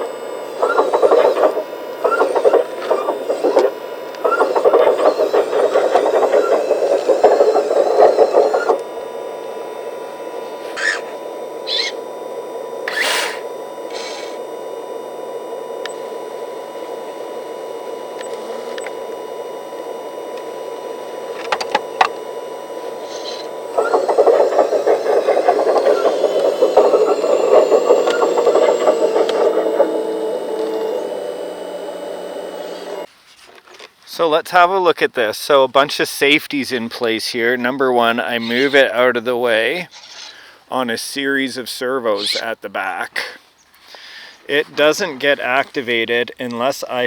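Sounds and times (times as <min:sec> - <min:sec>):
rough whirring with whining gear: 0:00.0 - 0:33.1
small electric motors humming: 0:00.0 - 0:33.1.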